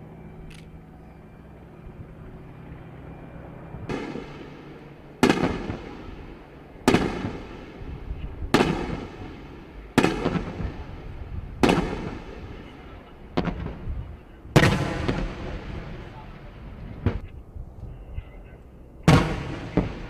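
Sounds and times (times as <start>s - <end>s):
sharp blasts with ringing echo: 3.9s - 7.9s, 14.6s - 16.4s, 19.0s - 20.0s.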